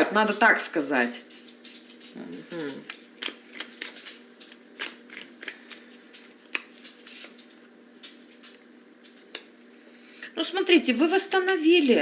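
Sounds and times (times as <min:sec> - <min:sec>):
cards being shuffled: 0:02.4 - 0:09.5.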